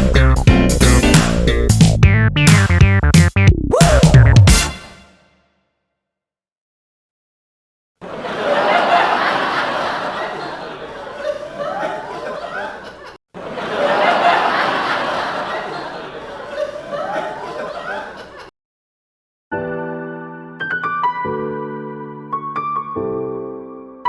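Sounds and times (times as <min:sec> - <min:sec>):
people laughing and chattering: 0:08.0 - 0:18.5.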